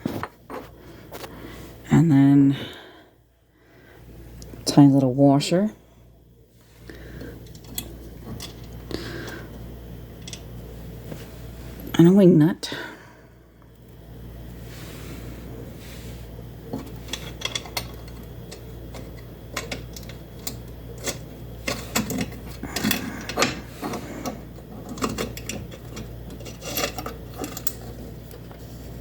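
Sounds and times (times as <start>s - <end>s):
steady low hum: 0.0s - 29.0s
small metal clicks and rattles: 10.2s - 10.5s, 16.7s - 28.5s.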